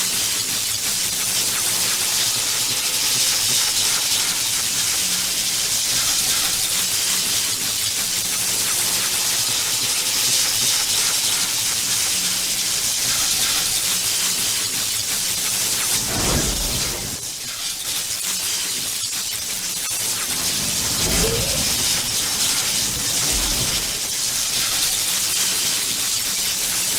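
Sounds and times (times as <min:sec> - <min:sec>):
electric crackling hiss: 0:15.1 - 0:17.9, 0:19.8 - 0:26.9
deep whoosh: 0:15.7 - 0:17.4, 0:19.9 - 0:25.6.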